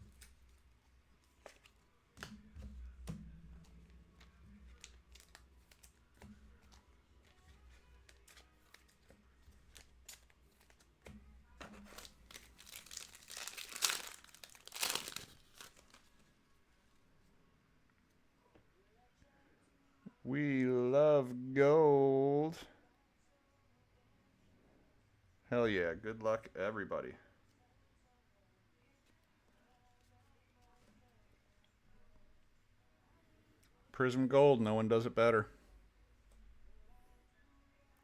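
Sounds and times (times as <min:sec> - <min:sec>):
cards clicking and tapping: 0:01.4 - 0:16.0
foil wrapper tearing and crinkling: 0:04.7 - 0:06.0, 0:09.6 - 0:10.9, 0:11.6 - 0:16.2.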